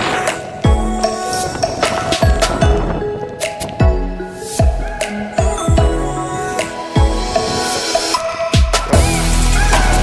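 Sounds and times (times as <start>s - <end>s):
electronic beat music: 0.0s - 10.0s.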